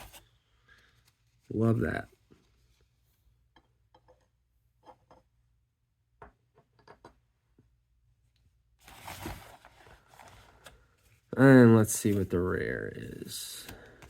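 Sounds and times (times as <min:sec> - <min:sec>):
cards rustling through hands: 0:08.8 - 0:14.0
cards clicking and tapping: 0:13.5 - 0:14.0.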